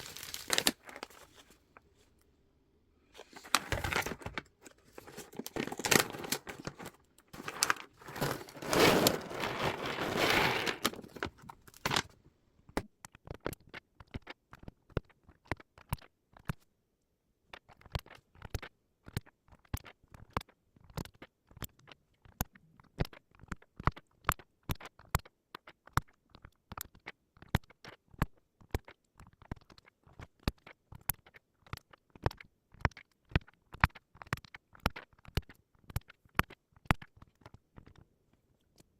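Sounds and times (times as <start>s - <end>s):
packaging crinkling: 0.0s - 1.6s, 3.2s - 12.2s.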